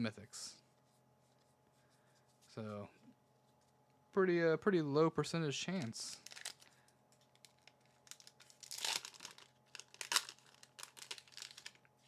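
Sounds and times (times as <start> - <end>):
foil wrapper crinkling: 5.7 - 11.9.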